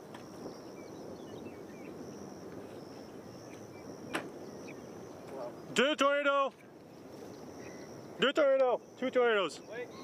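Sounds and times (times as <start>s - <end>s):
high insect trill: 0.0s - 10.0s
faint chirps: 6.9s - 10.0s.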